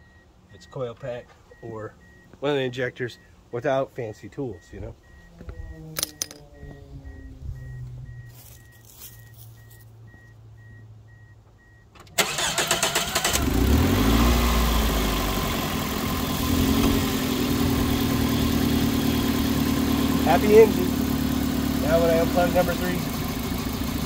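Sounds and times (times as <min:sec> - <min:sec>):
car engine idling: 0:00.0 - 0:24.0
faint electronic chime beeping: 0:04.1 - 0:11.8
car engine starter cranking: 0:11.9 - 0:14.4.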